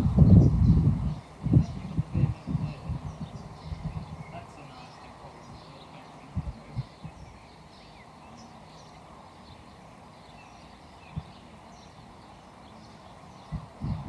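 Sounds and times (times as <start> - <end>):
dull low thumps: 0.0 - 1.1.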